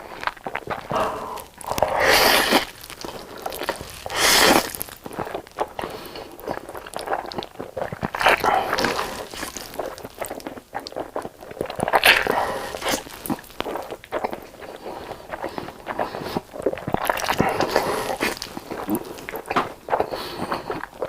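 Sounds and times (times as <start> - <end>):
crunchy chewing: 0.0 - 21.0
mouth clicks: 0.2 - 21.0.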